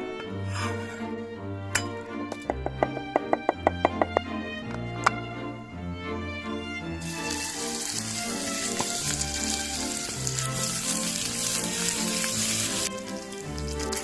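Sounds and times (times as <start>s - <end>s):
background music: 0.0s - 14.0s
food sizzling in a pan: 7.0s - 14.0s.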